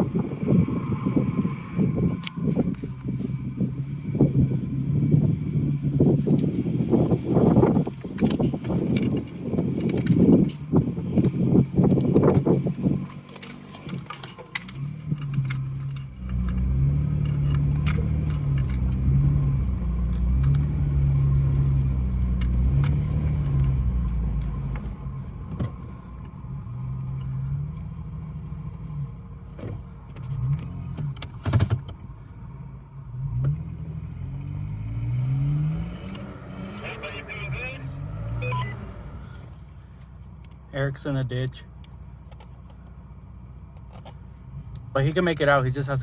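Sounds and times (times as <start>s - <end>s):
off-road vehicle engine revving: 0.0s - 25.8s, 33.1s - 39.6s
vehicle rattles and knocks: 6.0s - 26.3s, 29.4s - 32.1s.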